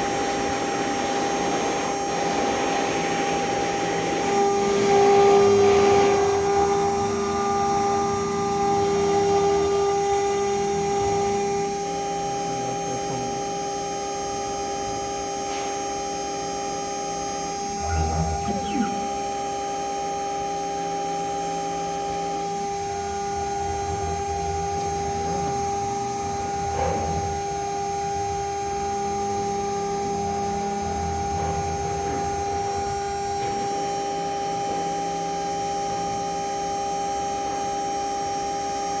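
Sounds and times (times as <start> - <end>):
router spindle whining: 16.2 - 26.6
motors droning: 17.3 - 20.1.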